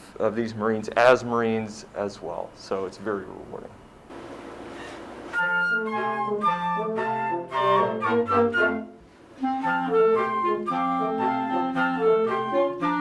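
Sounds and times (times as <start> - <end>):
clarinet and flute melody: 5.3 - 13.0.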